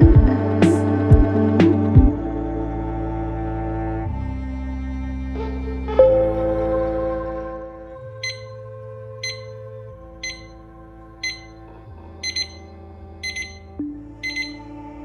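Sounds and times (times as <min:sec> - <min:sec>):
soft background music: 0:00.0 - 0:15.0
alarm clock beeping: 0:08.2 - 0:08.6, 0:09.2 - 0:09.6, 0:10.2 - 0:10.6, 0:11.2 - 0:14.7.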